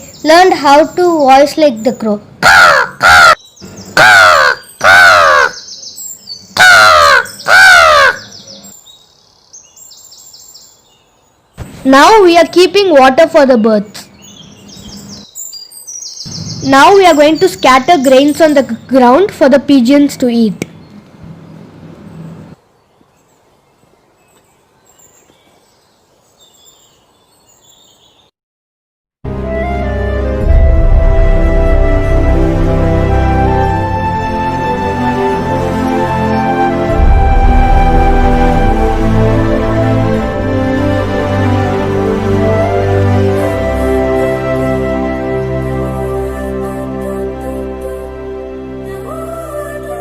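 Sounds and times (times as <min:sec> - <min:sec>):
faint outdoor background noise: 0:00.0 - 0:28.3
small birds chirping: 0:00.0 - 0:28.3
person imitating crow caws: 0:02.4 - 0:03.4, 0:04.0 - 0:05.6, 0:06.6 - 0:08.3
high bird chirps: 0:02.8 - 0:11.8, 0:14.0 - 0:19.0.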